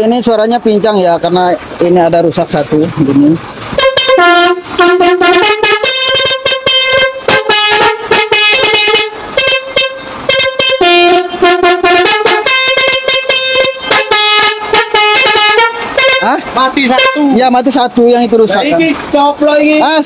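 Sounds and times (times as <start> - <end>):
multi-trumpet truck air horn tune: 3.7 - 17.6.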